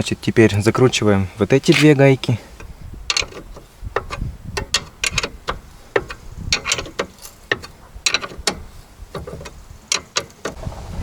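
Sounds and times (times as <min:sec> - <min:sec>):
ratchet wrench clicking: 0:02.6 - 0:10.6.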